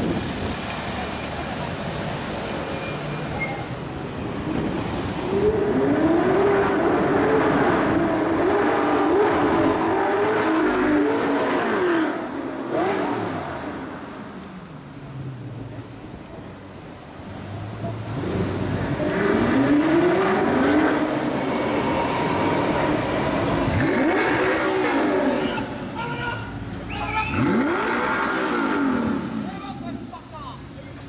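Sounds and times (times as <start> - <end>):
sports car engines revving: 4.1 - 14.3, 17.2 - 26.0, 26.6 - 31.0.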